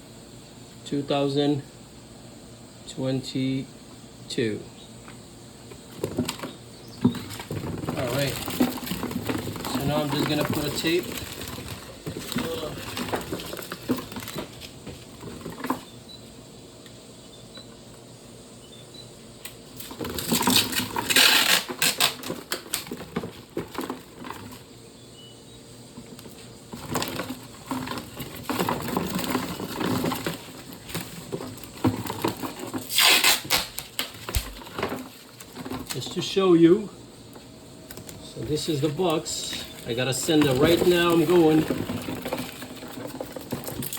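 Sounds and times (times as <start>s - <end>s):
packing tape pulled off roll: 19.9s - 23.0s, 32.7s - 35.1s
knocks and rustling of cardboard box: 26.8s - 35.9s.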